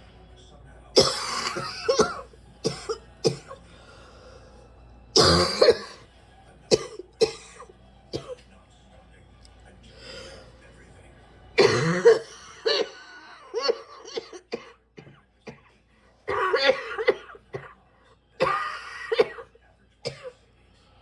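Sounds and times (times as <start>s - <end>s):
person coughing in fits: 1.0s - 3.6s, 5.2s - 6.0s, 6.7s - 8.4s, 11.6s - 15.7s, 16.3s - 17.8s, 18.4s - 20.3s.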